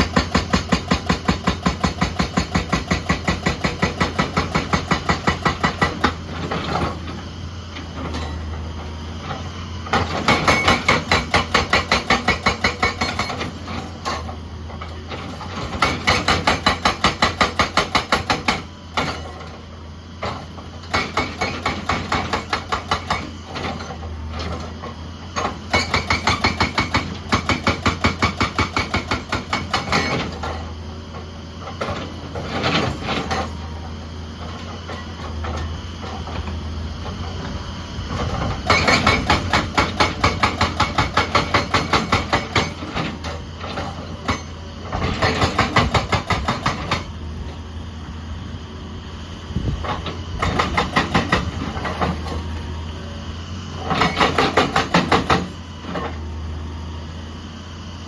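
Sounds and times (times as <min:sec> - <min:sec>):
hydraulic breaker hammering rock: 0:00.0 - 0:07.2, 0:09.3 - 0:19.6, 0:20.2 - 0:33.7, 0:38.1 - 0:47.4, 0:49.6 - 0:52.5, 0:53.7 - 0:56.2
excavator engine running: 0:00.0 - 0:58.0.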